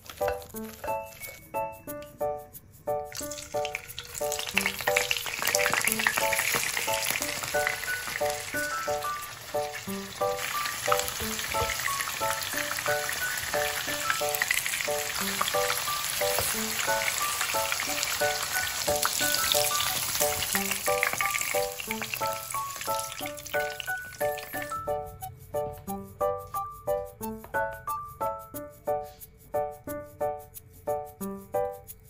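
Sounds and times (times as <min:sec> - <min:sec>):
light plucked background tune: 0:00.0 - 0:32.0
food sizzling in hot oil: 0:03.1 - 0:25.0.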